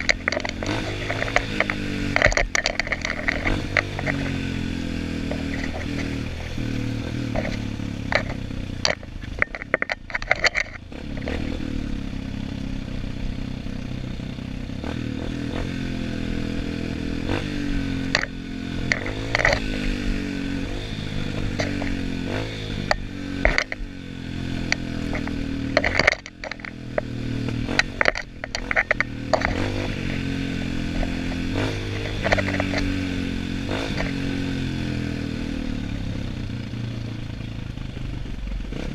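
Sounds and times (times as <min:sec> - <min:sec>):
sharp knocks and clatter: 0:00.0 - 0:11.5, 0:17.3 - 0:34.7
motorcycle engine revving: 0:00.0 - 0:38.9.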